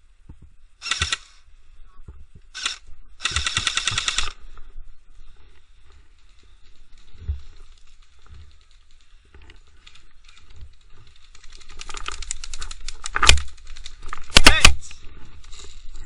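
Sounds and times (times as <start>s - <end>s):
airsoft gun rapid clicks: 0.8s - 1.3s, 2.6s - 4.4s, 11.2s - 14.8s.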